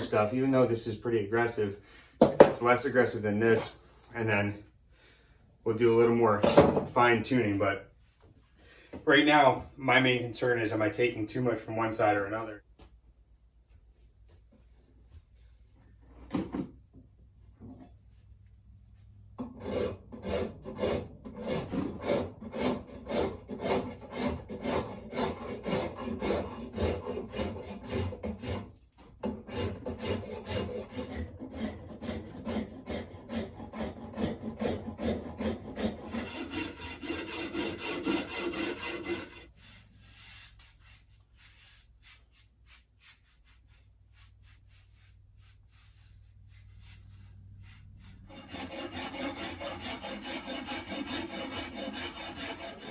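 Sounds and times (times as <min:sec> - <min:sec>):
file rasping on wood: 0:19.4 - 0:40.5, 0:48.2 - 0:52.9.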